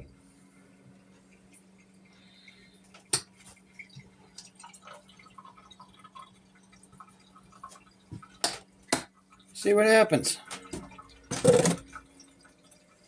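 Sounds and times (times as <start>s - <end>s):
low steady hum: 0.0s - 13.0s
liquid dripping: 1.3s - 9.6s.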